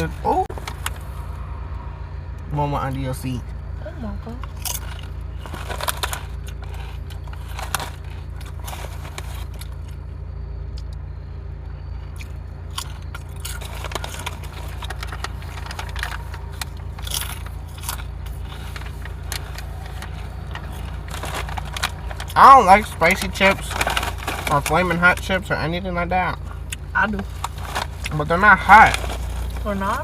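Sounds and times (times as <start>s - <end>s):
steady low hum: 0.0s - 30.0s
chips crunching: 4.4s - 10.1s, 12.1s - 25.3s, 26.6s - 30.0s
chip bag crinkling: 4.6s - 10.0s, 12.2s - 25.3s, 27.2s - 30.0s.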